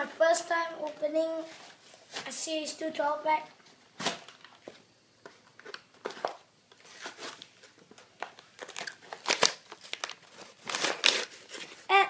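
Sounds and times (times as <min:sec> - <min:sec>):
plastic packaging crinkling and ripping: 0:05.5 - 0:11.9.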